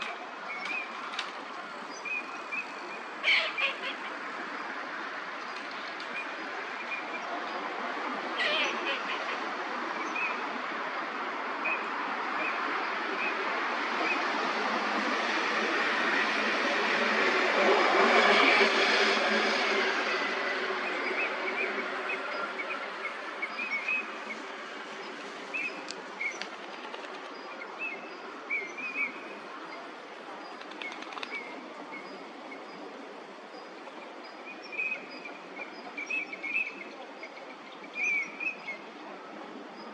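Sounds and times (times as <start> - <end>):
steady background noise: 0.0 - 39.9.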